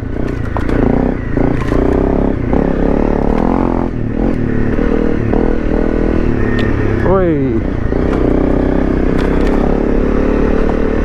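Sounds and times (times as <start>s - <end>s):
clattering knocks: 0.0s - 2.6s, 3.2s - 3.9s, 8.0s - 9.8s
motorcycle engine revving: 0.0s - 11.0s.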